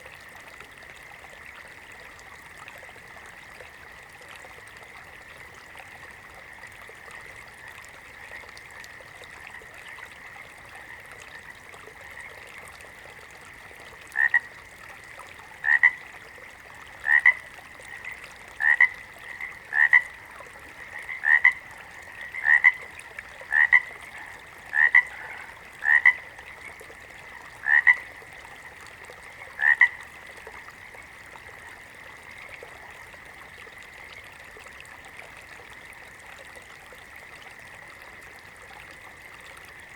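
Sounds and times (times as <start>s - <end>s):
frog croaking: 14.1s - 14.6s, 15.6s - 16.1s, 17.0s - 32.9s.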